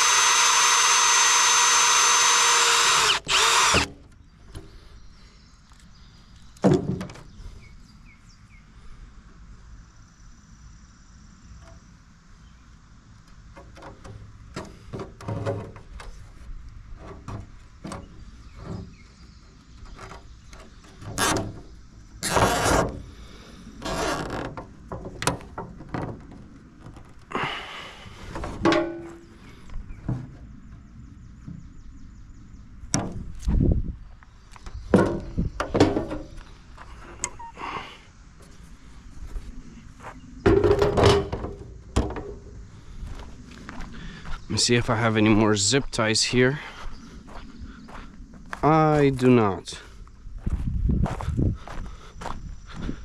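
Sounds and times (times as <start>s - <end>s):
knocks and thunks: 6.6s - 7.3s, 40.4s - 42.4s.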